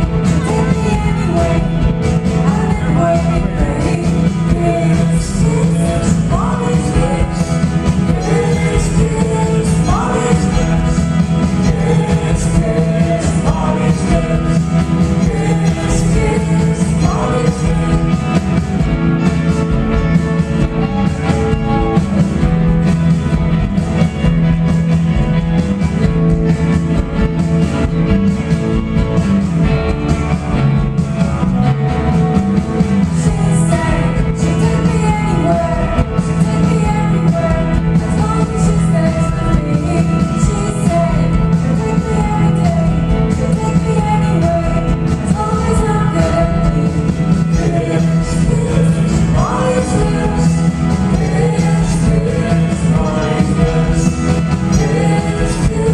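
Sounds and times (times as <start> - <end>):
live rock band with singing: 0.0 - 55.9.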